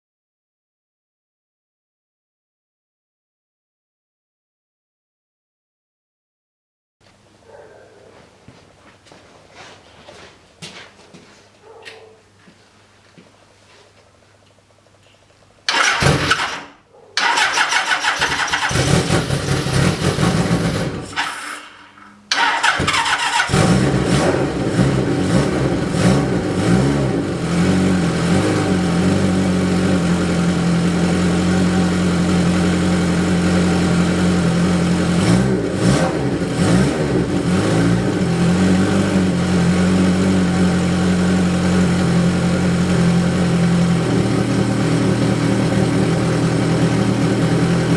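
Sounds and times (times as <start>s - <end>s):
motorcycle engine starting and idling: 15.7s - 47.9s.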